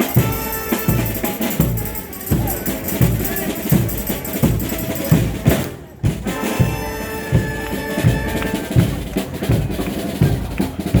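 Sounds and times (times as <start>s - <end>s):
steady drum beat: 0.0s - 11.0s
brass sustained notes: 6.3s - 8.7s.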